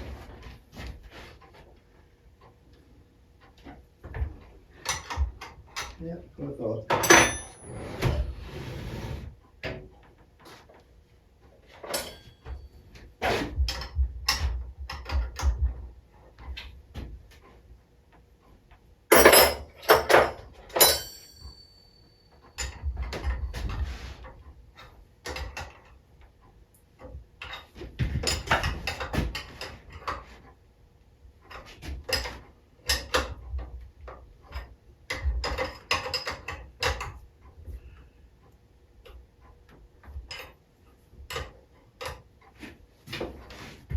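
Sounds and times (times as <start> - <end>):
metal parts and tools clinking: 6.9 - 7.9, 11.7 - 12.6, 19.1 - 23.6, 34.5 - 37.1.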